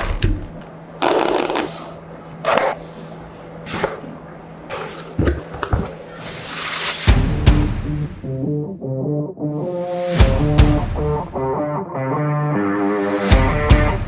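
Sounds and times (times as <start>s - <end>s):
cardboard box rustling and sliding: 1.1s - 7.6s.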